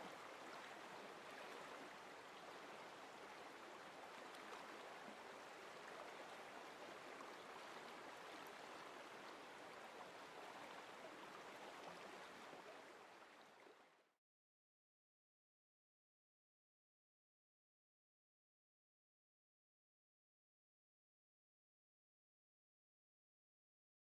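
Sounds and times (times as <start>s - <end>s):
stream flowing: 0.0s - 13.9s.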